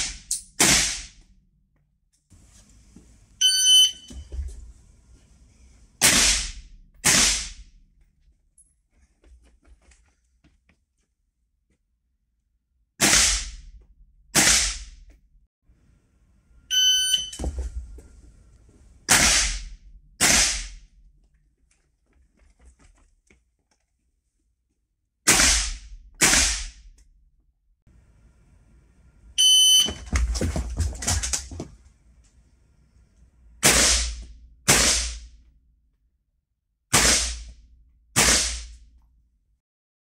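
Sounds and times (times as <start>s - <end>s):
shot timer beeps: 3.4s - 4.2s, 16.7s - 17.4s, 29.4s - 30.0s
rifle shots: 6.0s - 7.6s, 19.1s - 20.8s, 37.0s - 37.5s, 38.2s - 38.7s.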